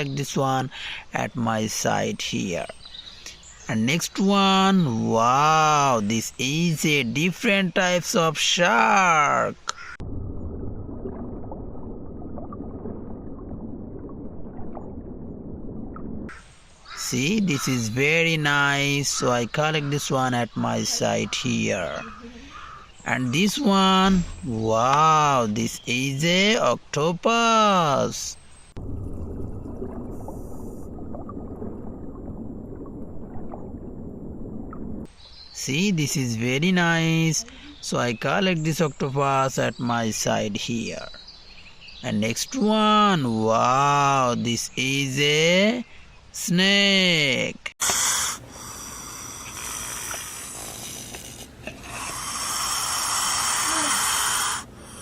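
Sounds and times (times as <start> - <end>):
low watery rumble: 0.0 - 27.0, 27.7 - 42.6, 48.4 - 55.0
snake hissing: 47.8 - 55.0
faint bubbling clicks: 50.0 - 52.2.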